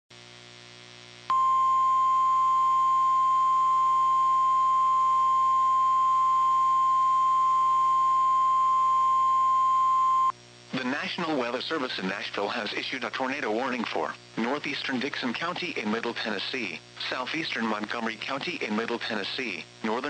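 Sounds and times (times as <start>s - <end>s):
loud steady warning beep: 1.3s - 10.3s
faint radio hiss: 10.3s - 20.0s.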